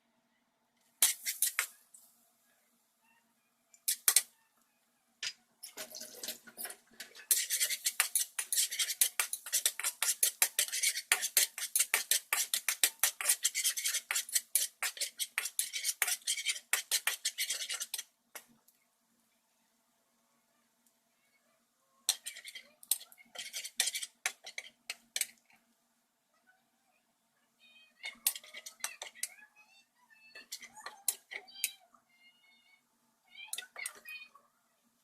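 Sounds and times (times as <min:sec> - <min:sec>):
metal utensil stirring in bowl: 0:05.2 - 0:18.1, 0:22.1 - 0:25.6, 0:28.0 - 0:29.3, 0:30.3 - 0:31.5.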